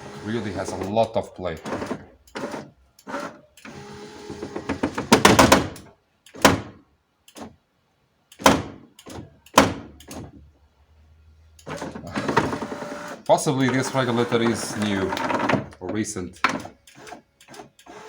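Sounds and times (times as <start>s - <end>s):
window regulator metal rattling: 13.6s - 16.8s.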